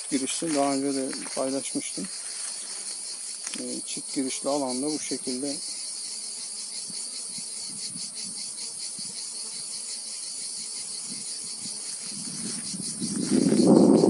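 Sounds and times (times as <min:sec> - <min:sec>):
insects chirring: 0:00.0 - 0:14.0.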